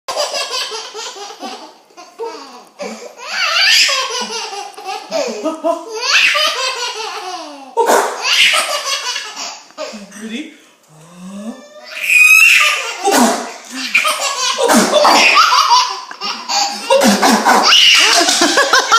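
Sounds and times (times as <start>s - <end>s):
baby laughing: 0.1s - 9.9s, 11.7s - 18.9s
adult sneezing: 7.8s - 8.2s, 13.0s - 13.9s, 14.6s - 15.4s.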